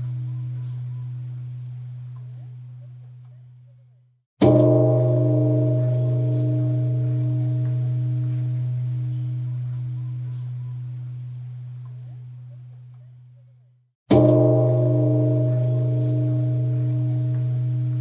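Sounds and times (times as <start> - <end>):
temple bell ringing: 4.4 - 12.3, 14.1 - 18.0.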